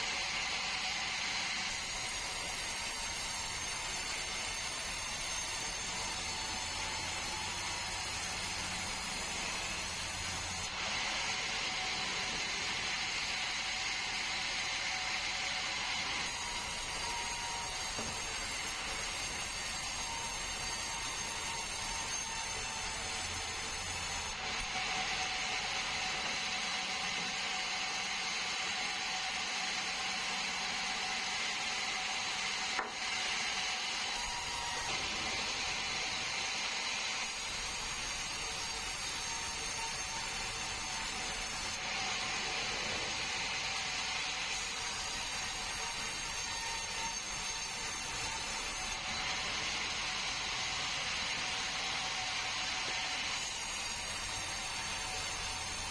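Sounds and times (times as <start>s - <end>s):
saw blade rasping through log: 1.7s - 11.8s, 16.1s - 24.8s, 37.2s - 43.2s, 44.5s - 49.3s, 52.1s - 55.9s.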